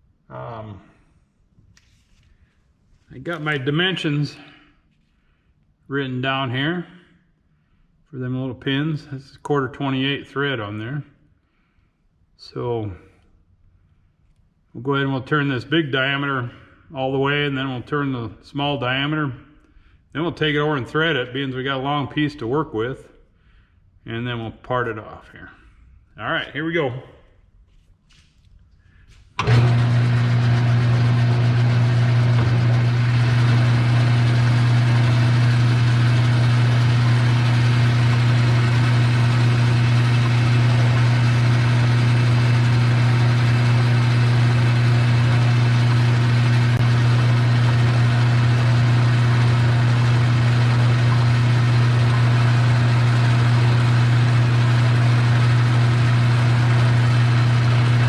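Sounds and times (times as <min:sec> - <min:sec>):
metal lathe motor humming: 0:29.4 - 0:58.0.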